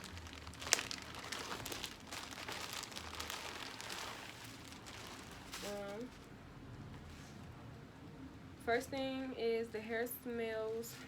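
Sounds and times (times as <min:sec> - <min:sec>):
packaging crinkling and rustling: 0:00.0 - 0:06.3.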